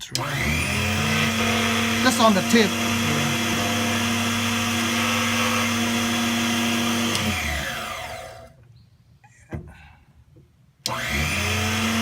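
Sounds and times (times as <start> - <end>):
key cutting machine running: 0.1 - 8.5, 10.9 - 12.0
motor spinning down: 0.1 - 8.6, 10.9 - 12.0.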